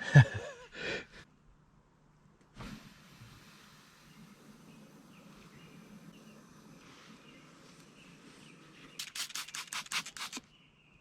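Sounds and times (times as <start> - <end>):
faint bird chirps: 3.8 - 11.0
spray bottle squirts: 8.9 - 10.5.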